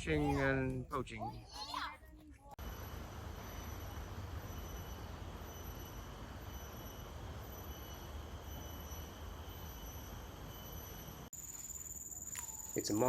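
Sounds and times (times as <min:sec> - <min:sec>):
faint high insect tones: 0:02.6 - 0:13.0
high-pitched insect drone: 0:02.6 - 0:13.0.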